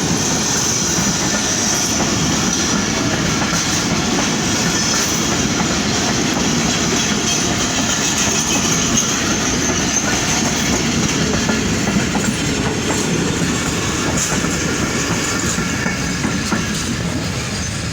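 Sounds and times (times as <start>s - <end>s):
train coaches rumbling past: 0.0s - 17.9s
wheels clacking over rail joints: 0.0s - 17.9s.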